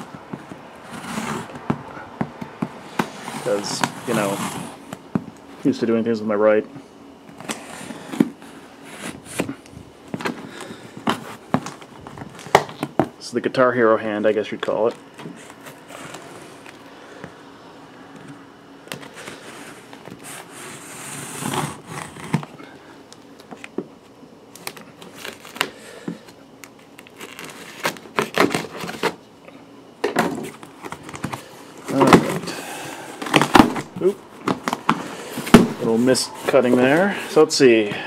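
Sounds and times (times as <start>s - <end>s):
cardboard rustling: 0.0s - 5.8s, 7.3s - 13.1s, 14.7s - 16.8s, 18.1s - 22.6s, 24.6s - 29.2s, 30.2s - 38.0s
cutting through cardboard and tape: 0.8s - 1.7s, 2.8s - 4.9s, 7.4s - 9.6s, 15.2s - 16.7s, 18.9s - 22.5s, 27.0s - 29.2s.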